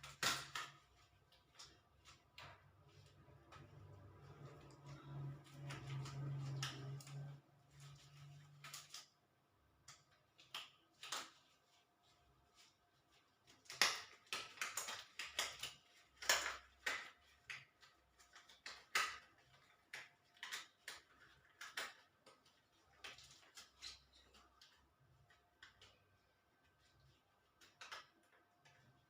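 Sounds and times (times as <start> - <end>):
hands rustling and clicking: 9.8 - 29.0.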